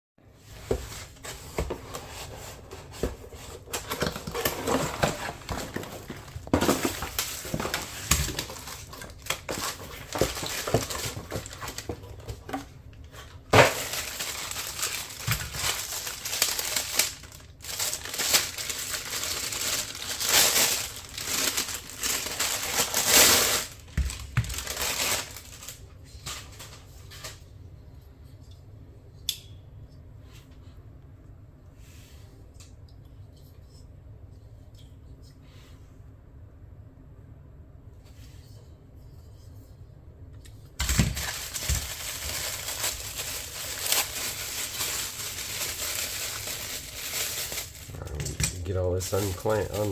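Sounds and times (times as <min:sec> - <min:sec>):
plastic wrapping crinkling: 0:01.0 - 0:27.4, 0:40.8 - 0:49.9.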